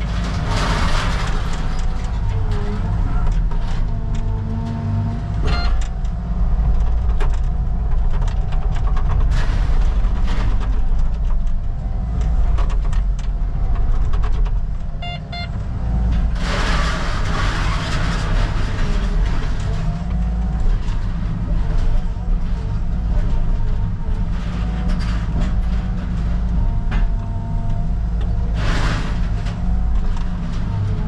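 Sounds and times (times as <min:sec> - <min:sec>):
debris crunching and cracking: 0:00.0 - 0:05.0, 0:05.9 - 0:31.0
excavator diesel engine running: 0:00.0 - 0:31.0
crash of breaking material: 0:00.2 - 0:02.0.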